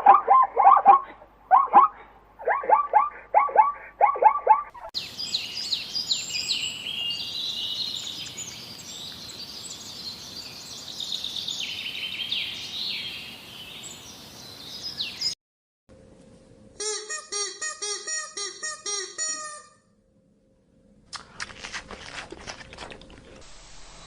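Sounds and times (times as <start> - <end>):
small birds chirping: 4.8 - 15.4.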